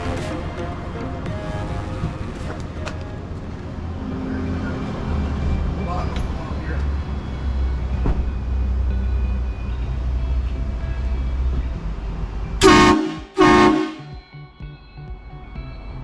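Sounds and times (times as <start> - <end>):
train horn blasts: 0.0 - 3.6, 12.6 - 14.2.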